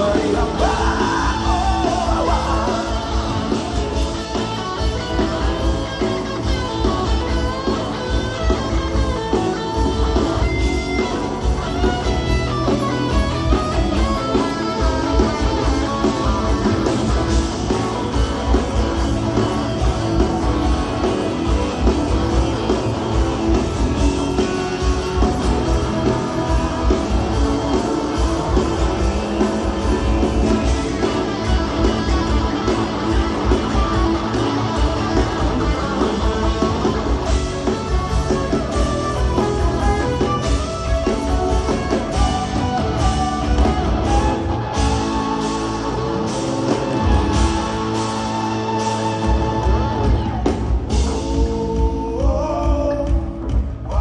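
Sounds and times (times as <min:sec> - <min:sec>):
guitar: 0:00.0 - 0:54.0
rock band playing: 0:00.0 - 0:54.0
steady drum beat: 0:00.0 - 0:54.0.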